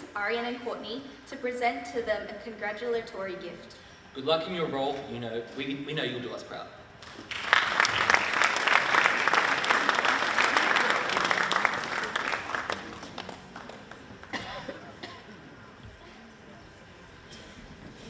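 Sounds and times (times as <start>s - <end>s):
audience applauding: 7.0s - 14.4s.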